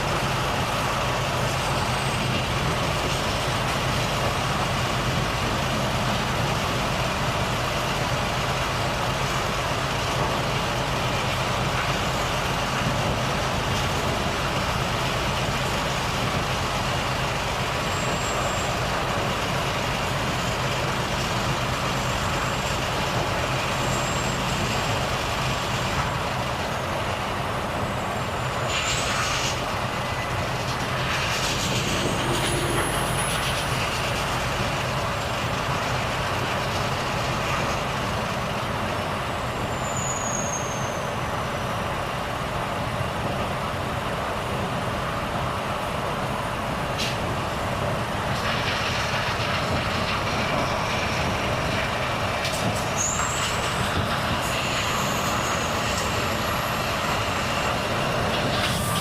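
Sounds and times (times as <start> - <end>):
truck diesel engine running: 0.0 - 59.0
air brake hiss: 28.7 - 29.6.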